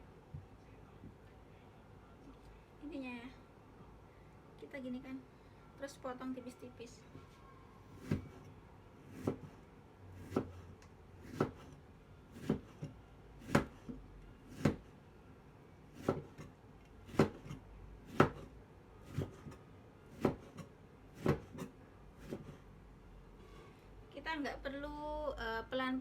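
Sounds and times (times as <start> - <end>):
knife slicing lemons: 9.1 - 9.5, 10.2 - 10.6, 11.2 - 11.7, 12.3 - 14.9, 16.0 - 16.5, 17.1 - 18.5, 19.1 - 22.6.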